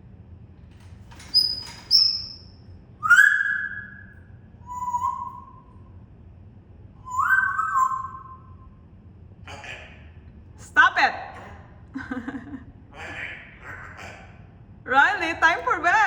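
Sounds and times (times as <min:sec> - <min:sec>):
parrot whistling: 0:03.0 - 0:05.7, 0:07.0 - 0:08.7.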